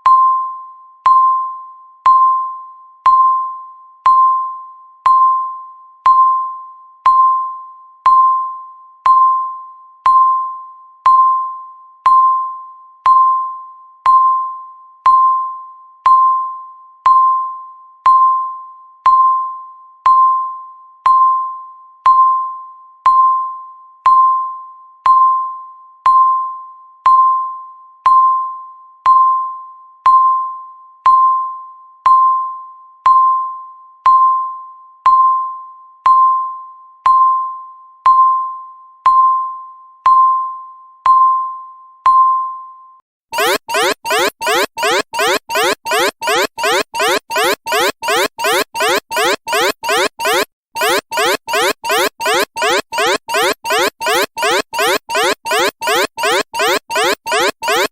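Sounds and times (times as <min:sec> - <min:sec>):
timer beeping: 0:43.4 - 0:57.9.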